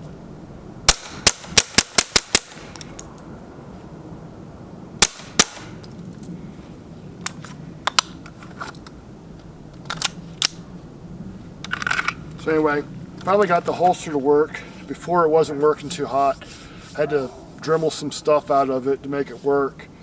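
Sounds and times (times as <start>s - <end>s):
suppressed pistol shots: 0.9s - 3.0s, 5.0s - 5.8s.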